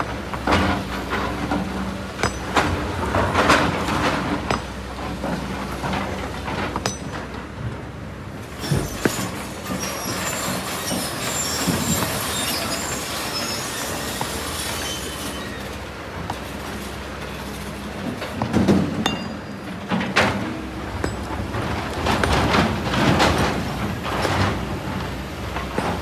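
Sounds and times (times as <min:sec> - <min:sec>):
knocks and clanks: 0:00.0 - 0:07.5, 0:18.0 - 0:26.0
metallic squealing and scraping: 0:08.4 - 0:15.9.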